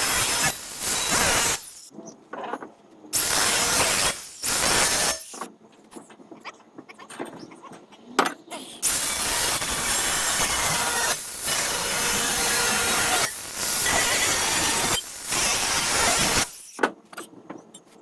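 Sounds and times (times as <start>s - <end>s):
welding hissing and crackling: 0.0s - 1.9s, 3.2s - 5.4s, 8.8s - 16.8s.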